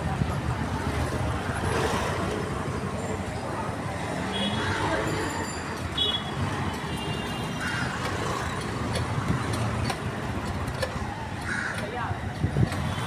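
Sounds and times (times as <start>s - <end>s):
street traffic: 0.0s - 13.0s.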